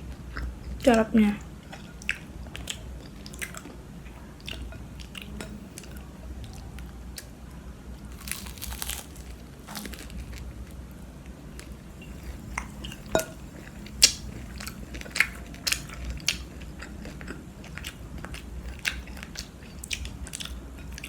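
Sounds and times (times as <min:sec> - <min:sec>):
crunching crispy chicken: 0:08.1 - 0:10.8.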